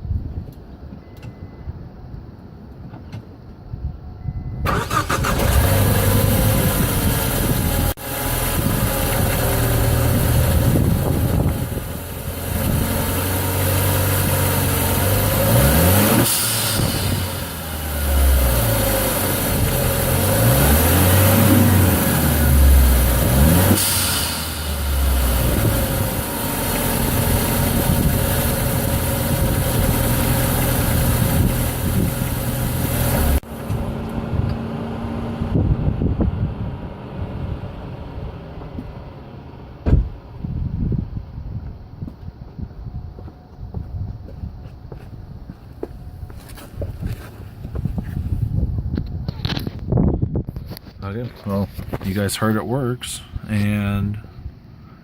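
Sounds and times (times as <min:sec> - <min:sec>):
car engine starting and revving: 0:04.7 - 0:40.5
blow-off valve whoosh: 0:15.5 - 0:18.4, 0:20.9 - 0:26.4.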